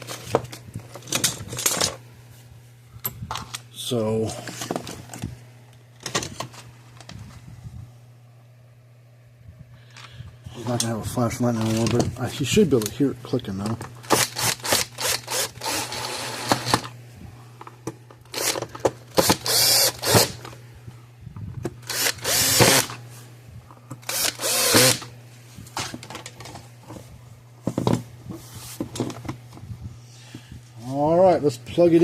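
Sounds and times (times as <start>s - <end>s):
power drill running: 14.1s - 16.9s, 18.3s - 20.5s, 21.8s - 23.0s, 24.0s - 25.1s.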